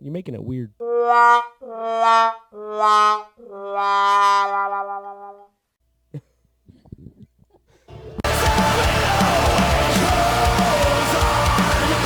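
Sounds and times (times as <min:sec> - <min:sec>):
metal music with horn line: 0:07.9 - 0:12.0.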